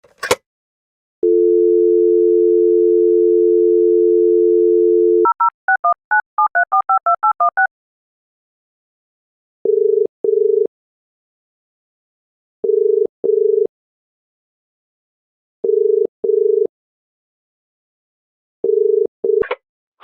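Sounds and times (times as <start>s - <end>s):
telephone dial tone: 1.2s - 7.7s, 9.7s - 10.7s, 12.6s - 13.7s, 15.6s - 16.7s
touch-tone dialing beeps: 1.2s - 7.7s.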